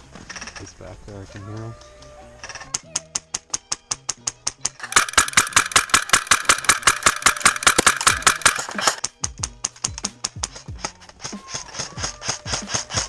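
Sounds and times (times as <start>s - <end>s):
airsoft gun full-auto burst: 4.8s - 9.0s.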